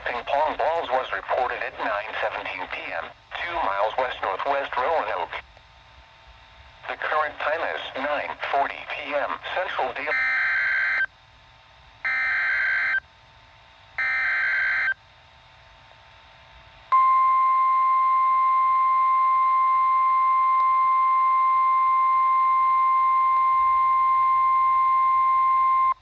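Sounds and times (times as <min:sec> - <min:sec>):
steady alarm tone: 0:10.1 - 0:11.1, 0:12.0 - 0:13.0, 0:14.0 - 0:15.0.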